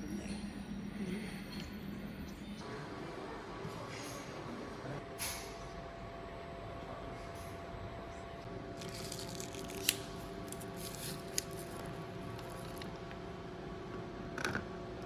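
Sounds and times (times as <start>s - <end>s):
wrapper crinkling and rustling: 8.8s - 12.9s.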